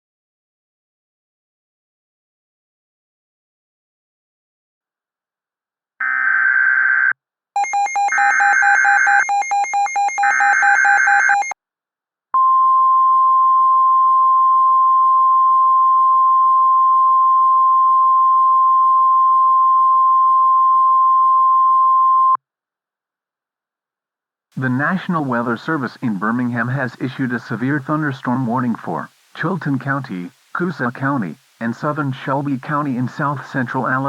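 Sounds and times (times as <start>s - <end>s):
steady warning alarm tone: 7.6s - 11.6s.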